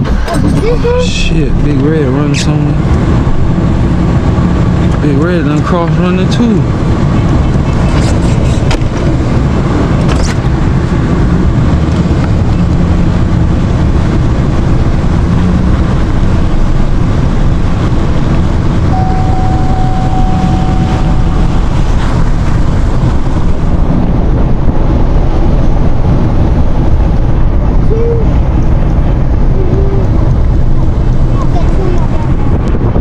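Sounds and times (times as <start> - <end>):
pickup truck engine and road noise: 0.0 - 33.0
thin steady tone: 18.9 - 22.0.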